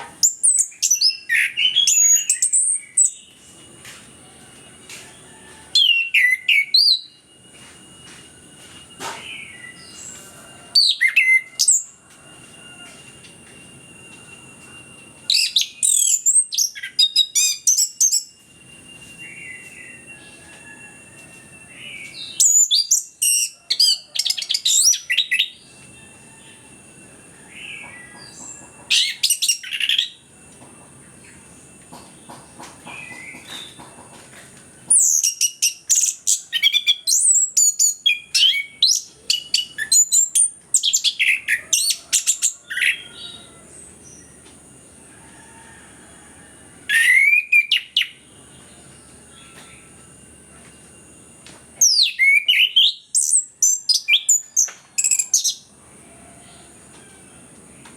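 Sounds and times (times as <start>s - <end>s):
faint high-pitched tone: 6.3s - 22.4s, 25.6s - 32.4s.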